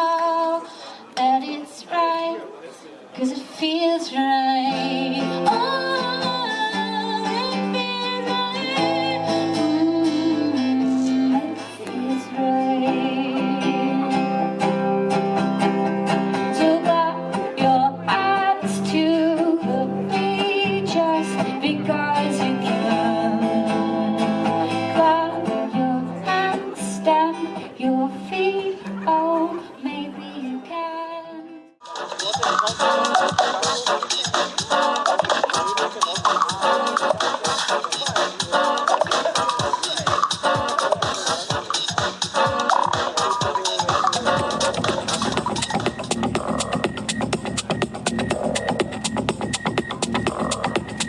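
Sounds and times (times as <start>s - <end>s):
woman singing: 0.0s - 2.4s, 3.2s - 14.3s, 16.5s - 31.7s
acoustic guitar playing: 4.5s - 18.6s, 21.8s - 26.9s, 31.8s - 51.0s.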